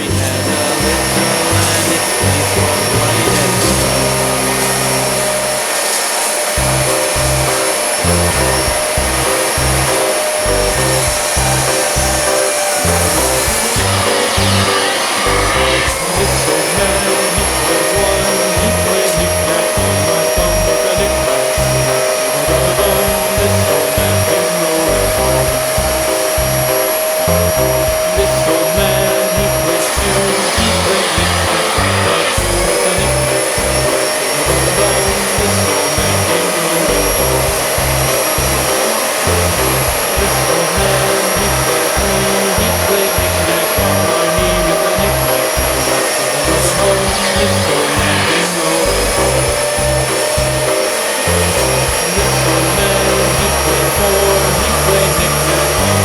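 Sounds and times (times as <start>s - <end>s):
background music with beat: 0.0s - 5.6s, 6.6s - 56.0s
vacuum cleaner motor whine: 4.4s - 32.7s, 47.1s - 52.8s.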